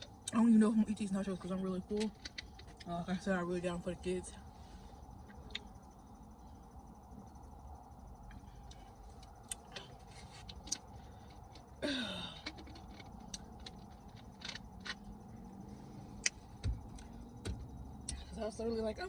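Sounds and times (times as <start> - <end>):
wet chewing mouth clicks: 9.2 - 9.8.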